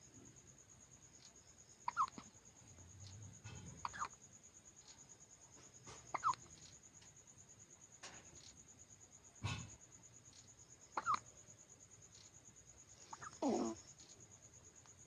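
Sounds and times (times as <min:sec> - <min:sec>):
baby hiccuping: 0:01.9 - 0:02.2, 0:13.2 - 0:13.8.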